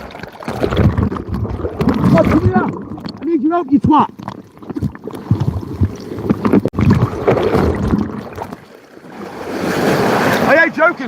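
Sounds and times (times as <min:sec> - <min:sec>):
sea surf splashing on rocks: 0:09.2 - 0:11.0.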